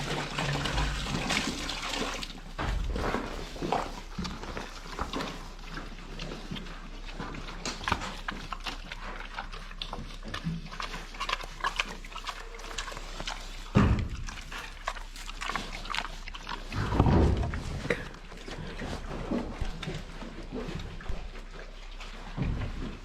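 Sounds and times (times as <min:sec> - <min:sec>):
pigs grunting: 0:00.0 - 0:23.0.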